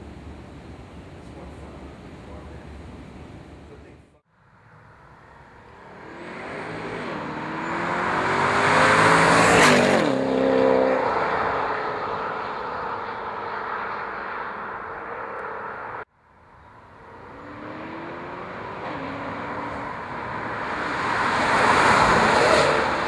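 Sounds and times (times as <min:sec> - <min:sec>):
sports car exhaust passing by: 0:04.4 - 0:16.0.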